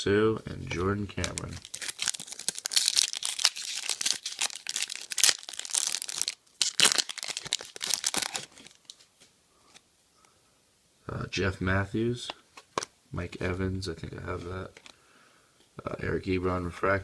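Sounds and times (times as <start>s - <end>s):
plastic wrapper tearing and crinkling: 1.1s - 9.1s.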